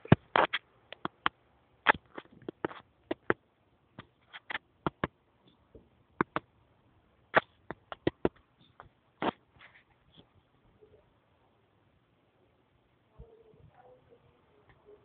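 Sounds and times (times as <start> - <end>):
sharp irregular clicks and taps: 0.0 - 3.4, 4.0 - 6.5, 7.3 - 9.4.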